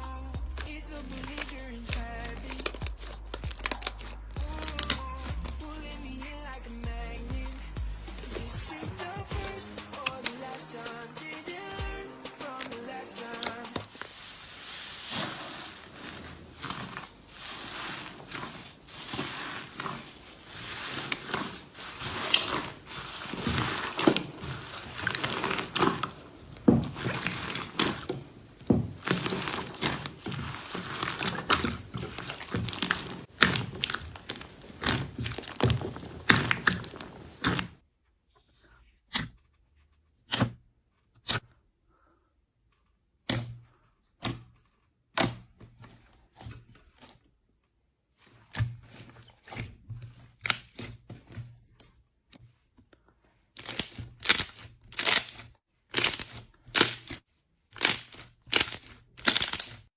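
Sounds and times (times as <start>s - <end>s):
slime squished by hand: 0.0s - 5.7s, 13.4s - 37.8s, 53.6s - 57.2s, 57.8s - 59.9s.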